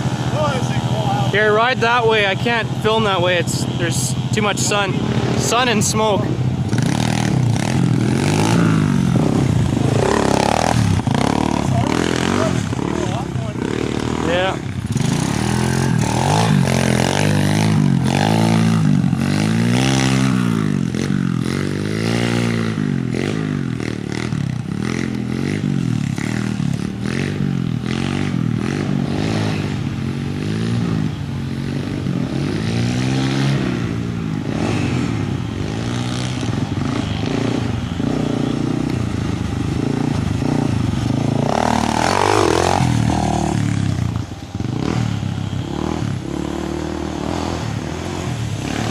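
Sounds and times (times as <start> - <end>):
pit bike engine revving: 0.0 - 48.9.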